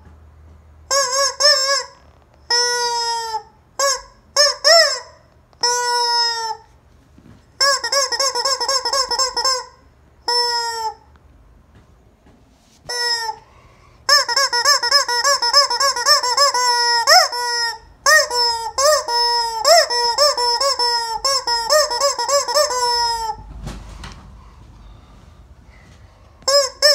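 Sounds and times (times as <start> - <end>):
rubber squeaky toy squeaking: 0.9 - 6.7, 7.6 - 11.1, 12.9 - 13.4, 14.1 - 23.5, 26.4 - 26.9.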